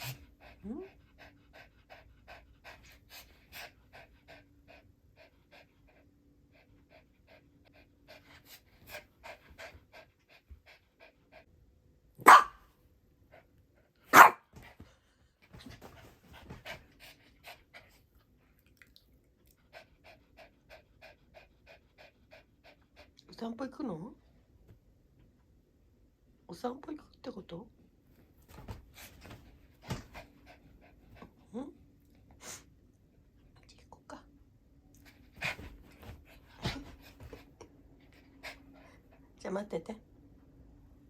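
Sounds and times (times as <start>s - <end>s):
dog panting: 0.0s - 11.5s, 14.6s - 18.4s, 19.4s - 23.3s, 28.5s - 31.5s, 35.0s - 39.4s.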